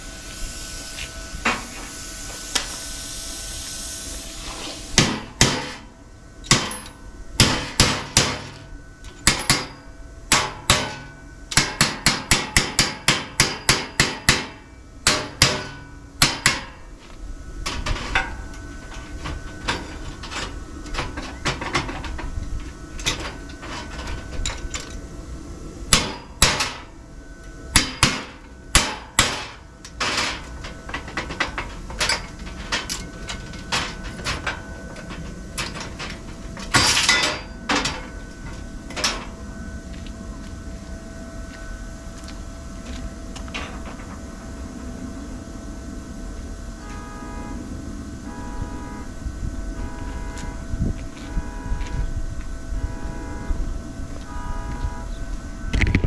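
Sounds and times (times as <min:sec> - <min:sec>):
hammer blows: 0:00.0 - 0:24.9, 0:25.9 - 0:40.1.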